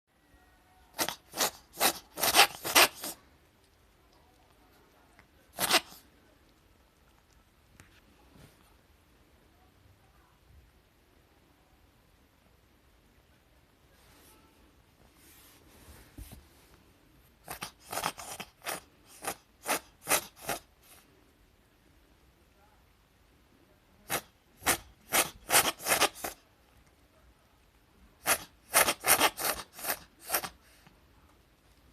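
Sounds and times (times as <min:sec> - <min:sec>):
short sharp sneezes: 0:05.5 - 0:06.0, 0:24.1 - 0:26.4.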